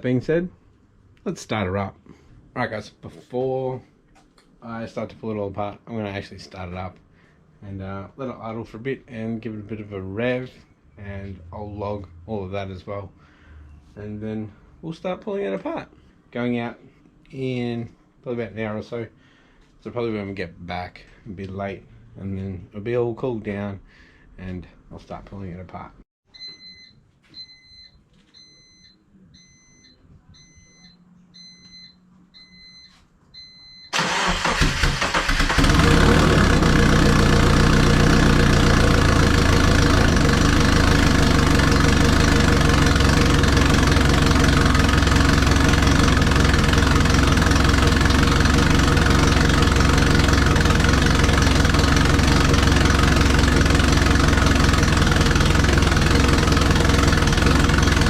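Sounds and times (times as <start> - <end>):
car engine starting and idling: 33.9 - 58.0.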